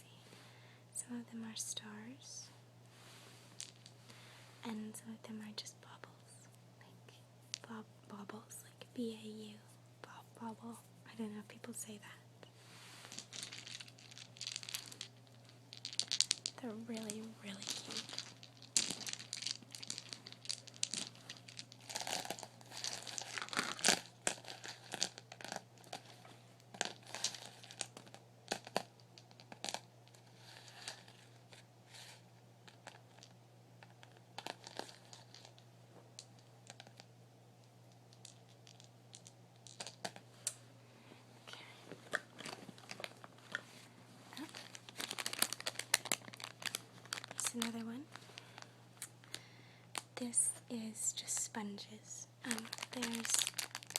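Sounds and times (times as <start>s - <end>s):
plastic packaging crinkling: 13.0s - 35.6s, 38.2s - 40.6s, 41.6s - 50.2s, 52.4s - 53.9s.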